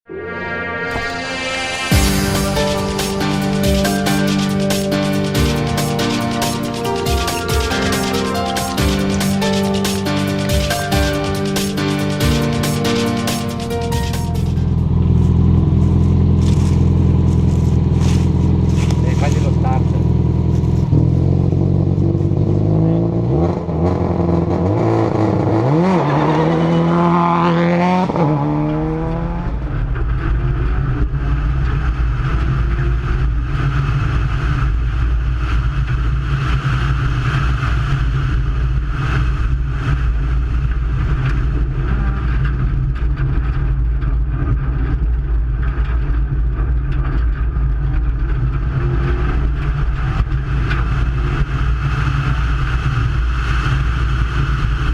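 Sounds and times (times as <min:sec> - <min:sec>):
rally car engine revving: 0:14.2 - 0:54.9.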